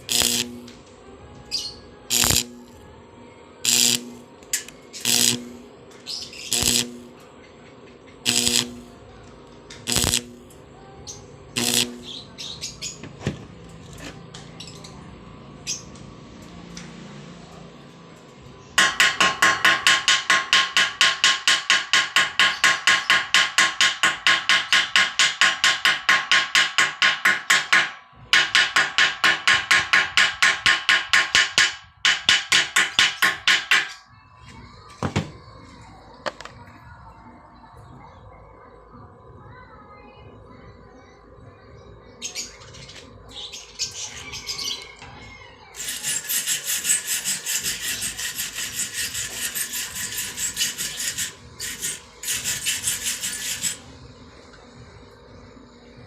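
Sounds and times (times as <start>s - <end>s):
welding arc pulsing: 0.0s - 0.8s, 2.1s - 2.8s, 3.6s - 7.2s, 8.2s - 9.0s, 9.8s - 10.6s, 11.5s - 12.2s, 45.8s - 53.9s.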